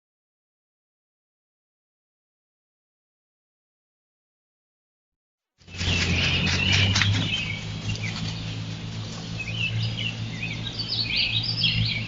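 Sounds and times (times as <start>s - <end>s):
birds chirping: 5.6s - 12.0s
steady low hum: 5.7s - 12.0s.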